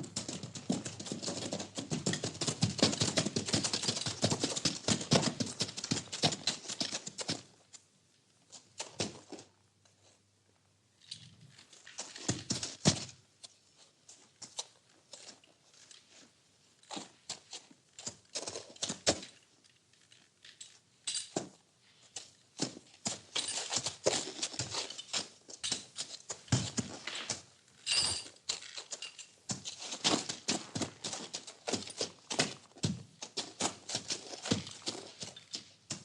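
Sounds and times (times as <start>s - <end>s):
horses knocking and clattering in stalls: 0.0s - 7.7s, 8.5s - 9.6s, 11.0s - 36.0s
rustling of horses feeding: 22.0s - 36.0s.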